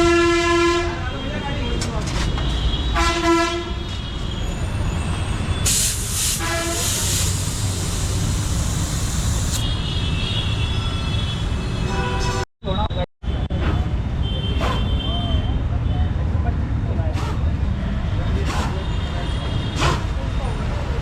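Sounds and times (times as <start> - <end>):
traffic rumble: 0.9 - 21.0
loud hiss: 5.6 - 9.6
horns sounding: 5.7 - 7.4.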